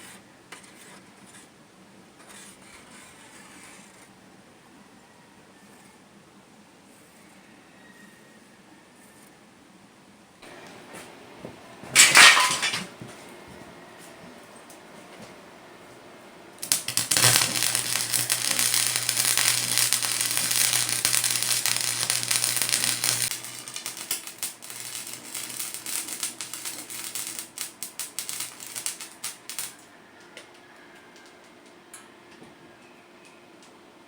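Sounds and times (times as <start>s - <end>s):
low electrical hum: 10.4s - 30.2s
welding arc crackling: 15.9s - 29.8s.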